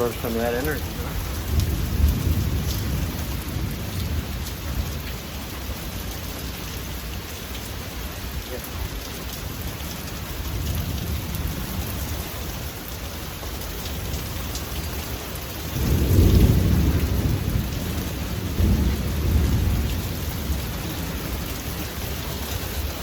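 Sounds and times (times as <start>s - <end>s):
low rolling thunder: 0.0s - 7.0s, 8.2s - 12.2s, 15.6s - 23.0s
rain hiss: 0.0s - 23.0s.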